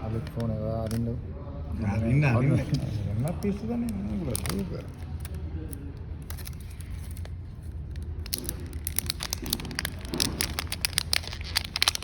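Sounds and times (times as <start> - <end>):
plastic packaging crackling: 3.4 - 12.0.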